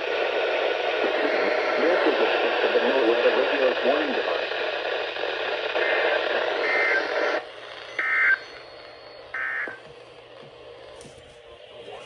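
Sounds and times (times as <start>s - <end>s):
receiver hiss: 0.0s - 12.0s
warbling data tone bursts: 6.6s - 9.9s.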